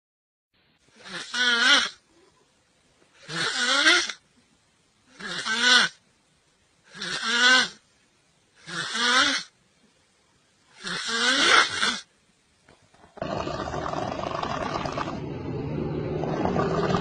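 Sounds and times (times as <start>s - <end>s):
person snoring loudly: 6.9s - 7.8s, 10.8s - 12.1s, 13.2s - 17.0s.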